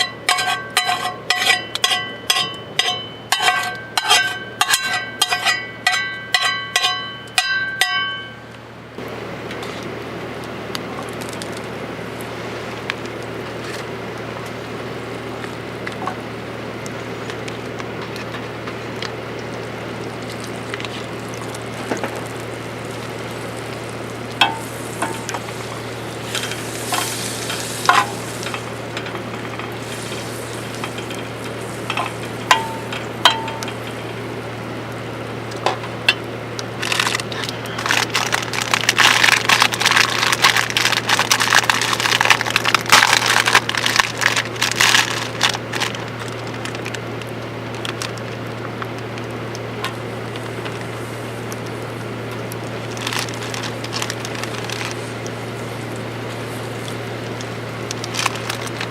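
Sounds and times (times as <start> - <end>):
utensil clinking against pan: 0.0 - 8.3
food sizzling in a pan: 21.6 - 34.4.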